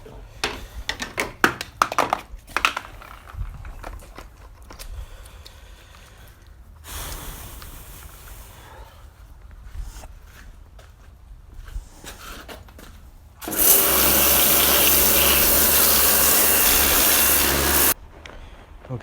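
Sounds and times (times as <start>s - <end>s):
hiss: 6.8s - 8.9s, 13.4s - 18.0s.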